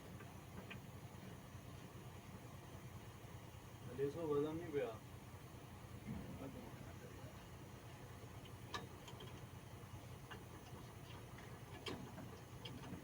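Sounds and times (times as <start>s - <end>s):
faint clicks and light knocks: 0.0s - 1.9s, 8.4s - 9.6s, 10.2s - 13.0s.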